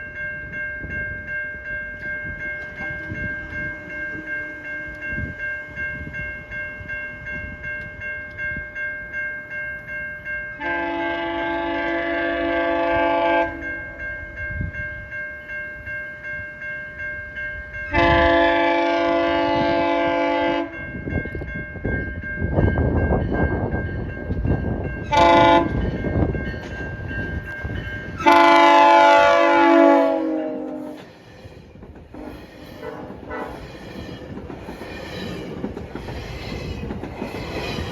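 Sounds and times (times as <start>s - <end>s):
railroad crossing bell dinging: 0.0s - 37.9s
train rumble and wheel clatter: 0.0s - 37.9s
train air horn blasts: 10.6s - 13.7s, 17.9s - 20.8s, 25.1s - 25.8s, 28.2s - 31.2s, 32.3s - 33.7s.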